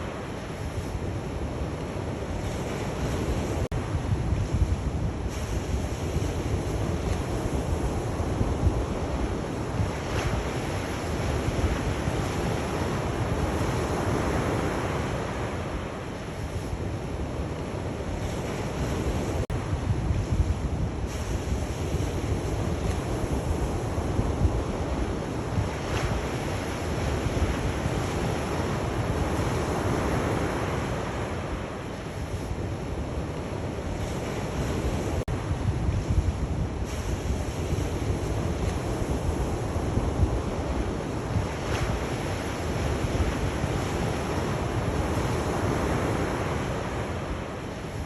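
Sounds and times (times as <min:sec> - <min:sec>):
sea waves washing ashore: 0:00.0 - 0:48.0
wind on microphone: 0:00.0 - 0:48.0.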